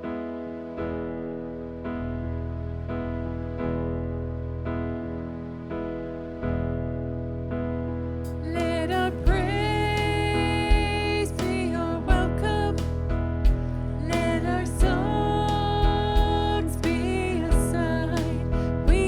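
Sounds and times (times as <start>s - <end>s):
sustained keyboard chords: 0.8s - 19.0s
kick drum beat: 9.2s - 19.0s.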